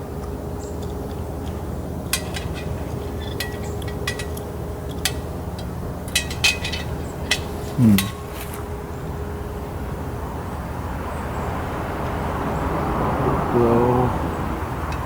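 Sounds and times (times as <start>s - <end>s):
metal rack clinking on grill: 0.7s - 8.8s.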